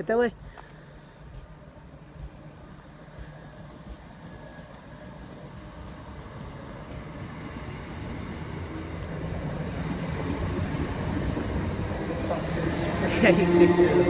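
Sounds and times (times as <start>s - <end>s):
electric train pulling away: 3.3s - 14.0s.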